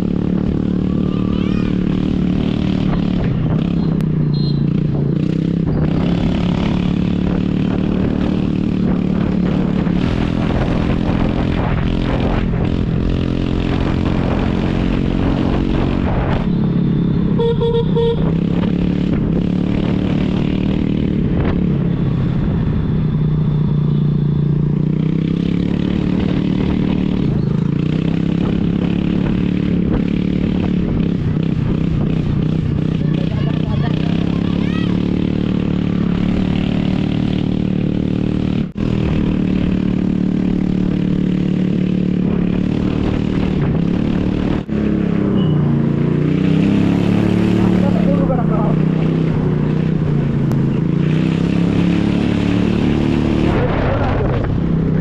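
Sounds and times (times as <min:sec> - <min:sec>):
scooter engine revving: 0:00.0 - 0:22.2, 0:24.4 - 0:55.0
vehicle horn honking: 0:03.8 - 0:04.7, 0:17.3 - 0:18.4.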